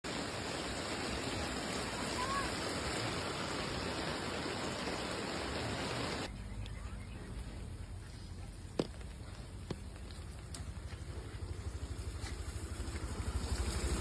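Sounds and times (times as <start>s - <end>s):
heavy rain hissing: 0.0s - 6.3s, 12.6s - 14.0s.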